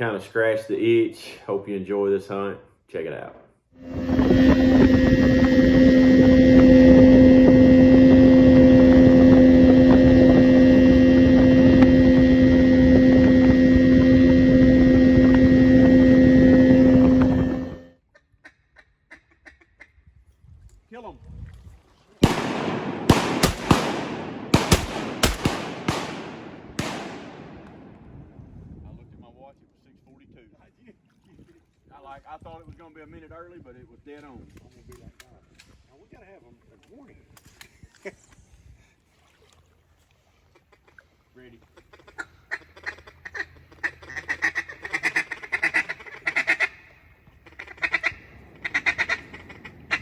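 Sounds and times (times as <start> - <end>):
echoing shotgun blasts: 22.2 - 28.4
duck calls quacking: 41.6 - 50.0.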